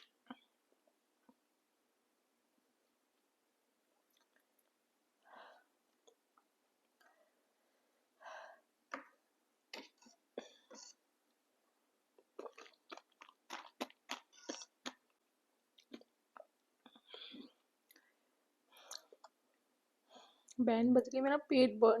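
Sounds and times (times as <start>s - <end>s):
chewing crisp fried snack: 12.2s - 15.1s.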